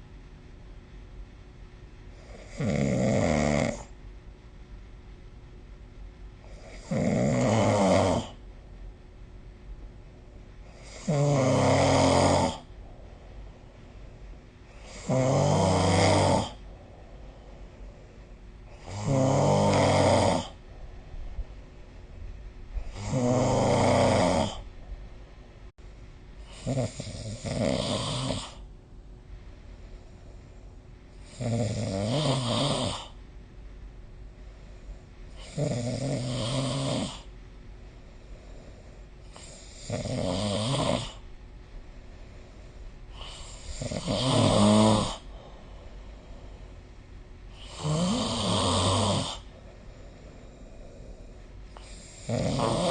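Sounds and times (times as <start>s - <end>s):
person snoring: 2.2s - 3.9s, 6.5s - 8.4s, 10.7s - 13.0s, 14.7s - 16.7s, 18.7s - 20.6s, 22.8s - 24.7s, 26.4s - 28.6s, 31.2s - 33.2s, 35.3s - 37.3s, 38.6s - 41.2s, 43.1s - 46.2s, 47.5s - 52.9s.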